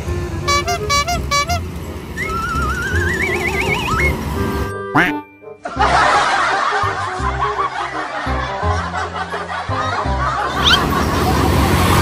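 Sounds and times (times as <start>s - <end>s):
low background music: 2.9s - 11.8s
many people laughing: 5.6s - 12.0s.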